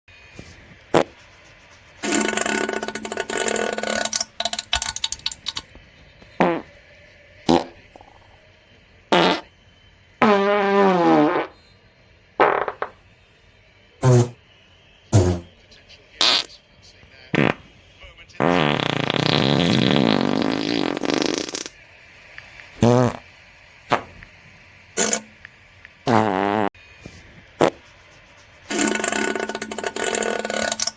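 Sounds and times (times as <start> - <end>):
fart sound effects: 0.9 - 1.2, 2.0 - 5.6, 6.4 - 6.8, 7.5 - 8.4, 9.1 - 9.5, 10.2 - 11.6, 12.4 - 13.0, 14.0 - 14.4, 15.2 - 15.6, 16.2 - 16.5, 17.3 - 17.7, 18.4 - 21.8, 22.8 - 23.3, 23.9 - 24.2, 25.0 - 25.3, 26.0 - 26.7, 27.6 - 27.8, 28.7 - 30.9.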